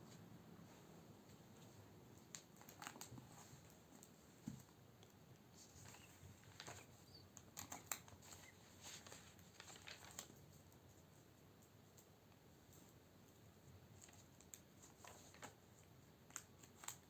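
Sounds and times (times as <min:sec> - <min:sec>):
faint small clicks and taps: 0:01.3 - 0:05.2, 0:05.8 - 0:11.0, 0:14.0 - 0:17.0.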